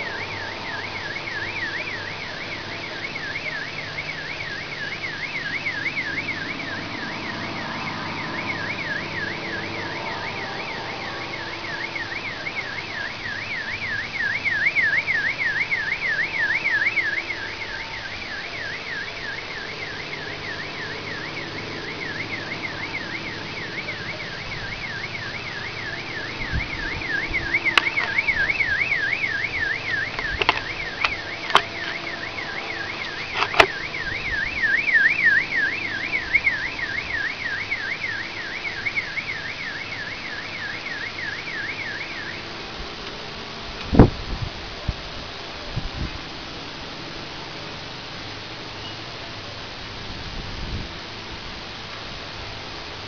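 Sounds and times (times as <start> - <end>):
car alarm siren warbling: 0.0 - 53.0
sharp clicks: 30.1 - 32.2, 33.0 - 33.8.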